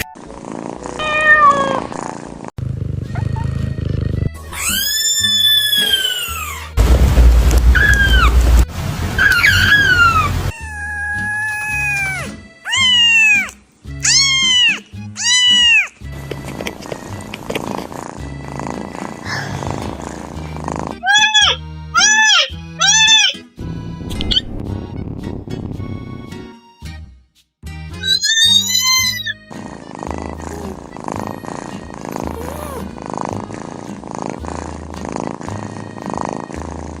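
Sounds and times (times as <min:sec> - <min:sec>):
cat purring: 0:00.0 - 0:04.4, 0:16.1 - 0:21.0, 0:29.4 - 0:37.0
cat meowing: 0:01.0 - 0:01.9, 0:09.2 - 0:15.9, 0:21.0 - 0:23.4, 0:28.0 - 0:29.4, 0:32.1 - 0:32.9.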